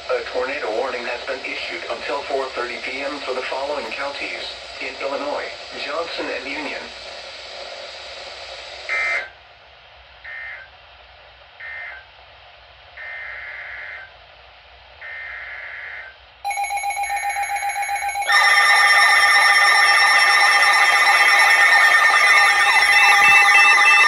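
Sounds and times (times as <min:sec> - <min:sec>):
loud multi-tone alarm: 0:16.5 - 0:24.0
pulsing electronic alert tone: 0:16.5 - 0:24.0
warbling data bursts: 0:16.5 - 0:24.0.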